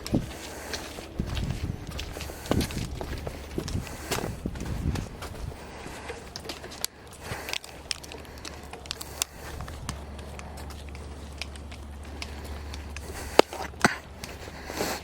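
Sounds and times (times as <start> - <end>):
low steady rumble: 0.0 - 15.0
walking and handling clicks: 0.0 - 15.0.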